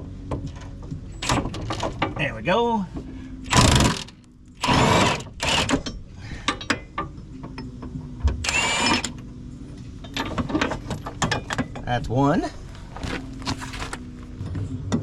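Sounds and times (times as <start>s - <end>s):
impact wrench bursts: 8.4s - 9.1s.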